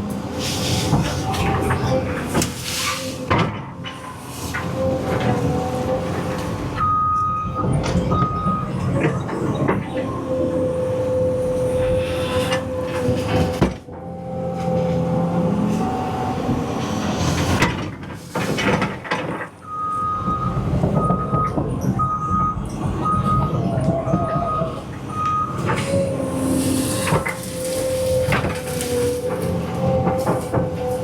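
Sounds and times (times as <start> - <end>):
excavator diesel engine: 0.0 - 31.0
hydraulic whine: 0.4 - 18.8, 19.6 - 31.0
warning alarm beeping: 19.7 - 25.7.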